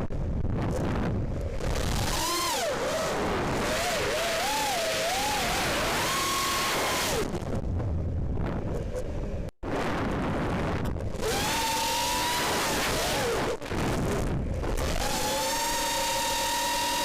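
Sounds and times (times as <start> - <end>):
quadcopter motors whining: 1.6 - 7.3, 11.2 - 13.6, 14.8 - 17.0
wind noise rushing: 5.2 - 15.4.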